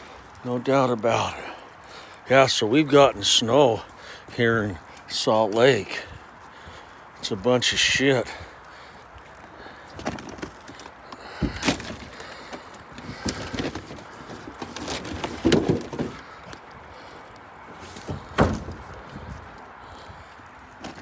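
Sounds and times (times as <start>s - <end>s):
objects knocking and clunking: 10.0s - 16.3s.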